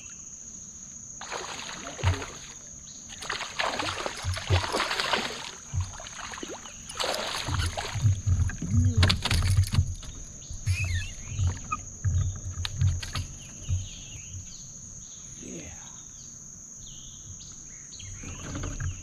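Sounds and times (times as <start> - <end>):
water splashing: 1.2 - 13.9
fish thumping against kayak: 1.2 - 14.2.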